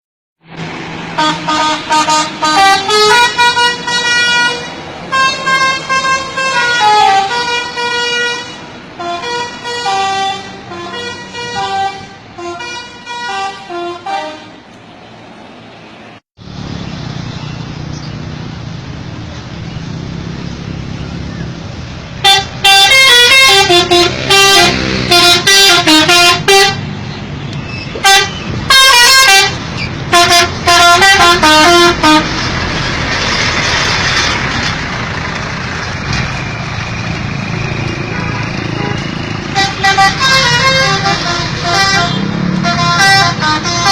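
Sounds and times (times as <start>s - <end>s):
musical bus air horn tune: 1.1s - 14.7s, 22.2s - 26.9s, 28.0s - 32.4s, 38.1s - 43.9s.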